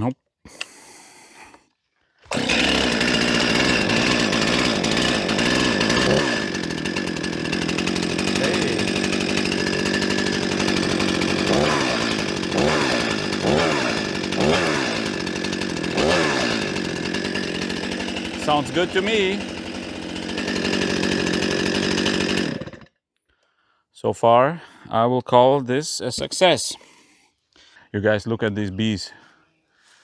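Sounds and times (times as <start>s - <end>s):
chainsaw starting and revving: 2.2s - 23.0s.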